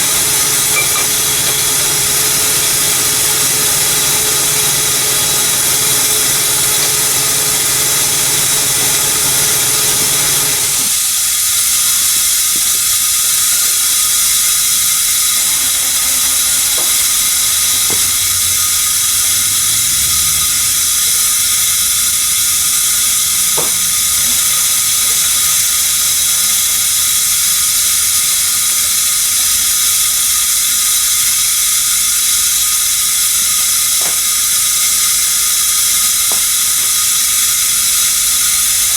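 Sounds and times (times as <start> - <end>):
loud hiss: 0.0 - 38.9.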